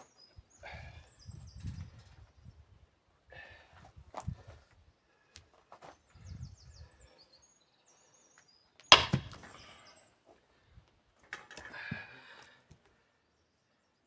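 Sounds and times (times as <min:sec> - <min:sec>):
small birds chirping: 0:00.0 - 0:02.7, 0:05.9 - 0:10.2
knock and rattle: 0:08.9 - 0:09.4
sledgehammer striking steel wedge: 0:08.9 - 0:09.5.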